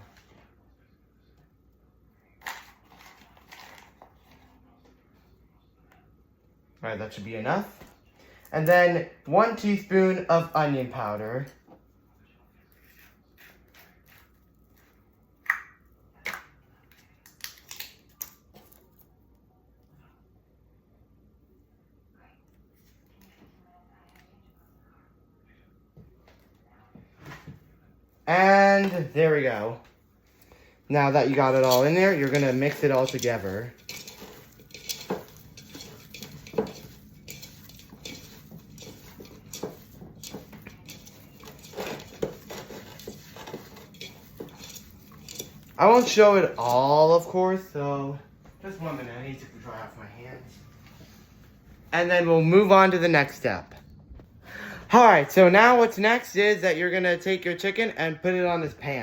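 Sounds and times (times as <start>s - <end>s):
faint room hum: 0.0s - 59.0s
meat squishing in a bowl: 30.4s - 47.3s
kitchen utensils clicking: 31.0s - 46.9s.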